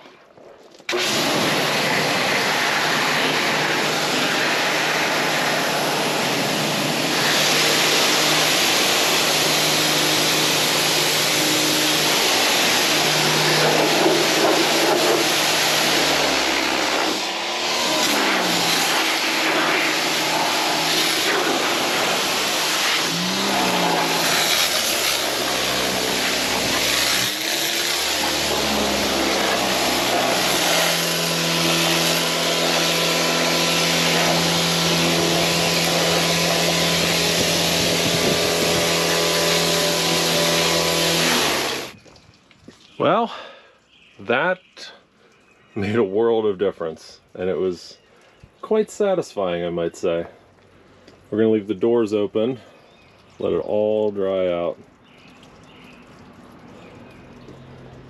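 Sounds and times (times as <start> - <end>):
machine hum: 0.9 - 41.9
pressure washer spray hissing: 1.0 - 41.0.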